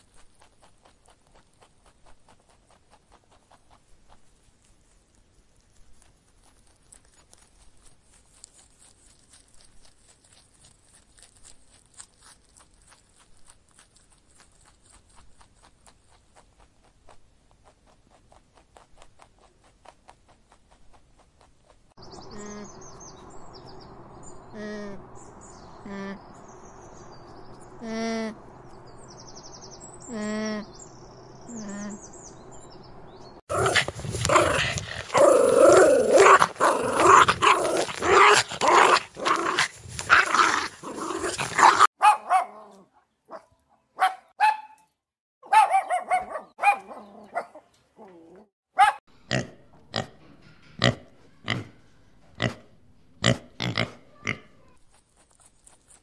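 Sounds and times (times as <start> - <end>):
dogs barking and growling: 33.5 - 44.8, 45.4 - 50.2.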